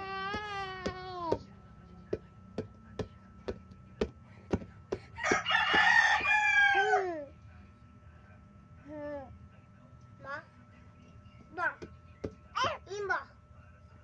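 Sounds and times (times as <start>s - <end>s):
ball tapping: 0.3s - 1.5s, 2.1s - 6.4s.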